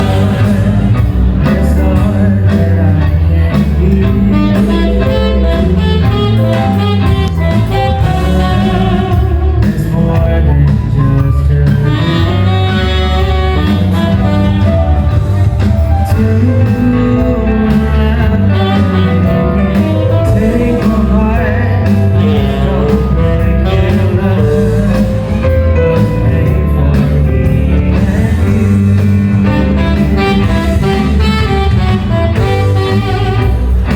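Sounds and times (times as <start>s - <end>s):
loud music with heavy bass: 0.0s - 33.9s.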